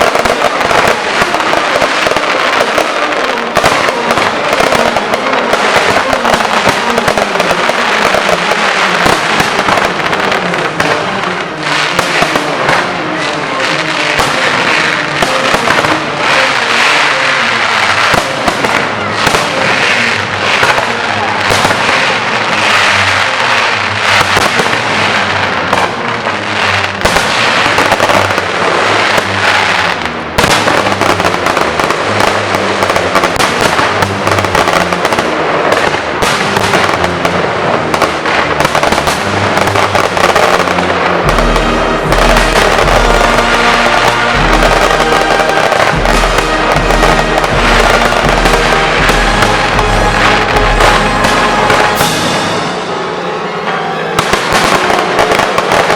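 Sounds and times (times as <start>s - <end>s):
fireworks bursting and crackling: 0.0s - 55.9s
music playing: 0.0s - 55.9s
deep bass line: 40.6s - 52.8s.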